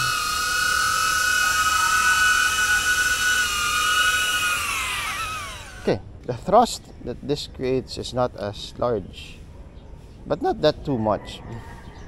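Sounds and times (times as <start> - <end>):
drone propellers whining: 0.0 - 6.0.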